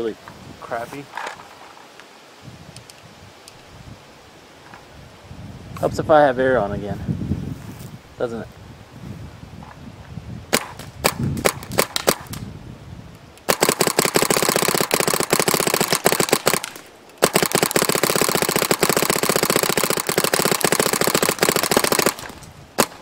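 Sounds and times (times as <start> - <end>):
paintball marker firing: 10.5 - 12.3, 13.4 - 23.0.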